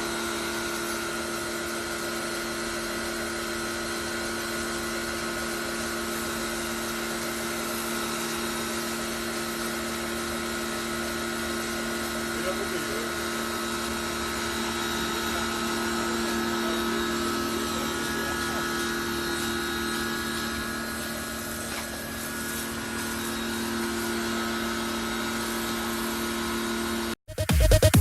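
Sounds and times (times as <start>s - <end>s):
pressure washer motor humming: 0.0s - 28.0s
spraying water hiss: 17.4s - 24.4s.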